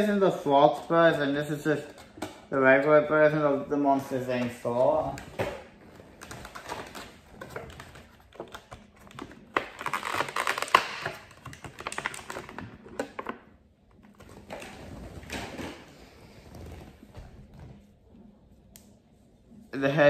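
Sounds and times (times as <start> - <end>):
figure unboxing clicks and rustling: 4.3 - 15.9.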